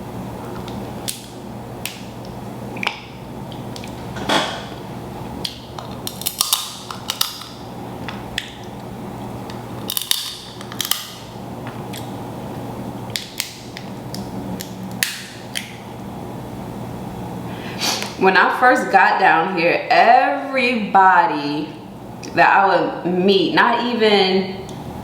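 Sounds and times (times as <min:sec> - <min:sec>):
shellfish shells cracking: 0:05.4 - 0:08.8, 0:09.5 - 0:11.3, 0:13.1 - 0:15.8.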